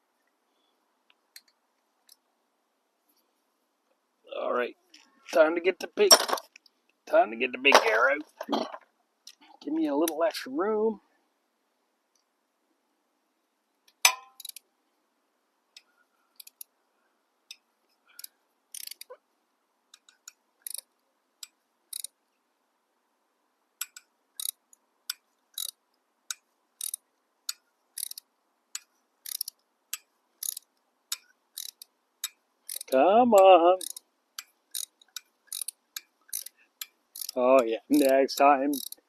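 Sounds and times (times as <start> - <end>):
ratchet wrench clicking: 14.1 - 14.6, 16.4 - 16.7, 18.2 - 19.1, 20.0 - 20.9, 21.9 - 22.1, 23.8 - 25.8, 26.8 - 28.2, 28.8 - 33.0, 33.8 - 38.1, 38.7 - 39.0.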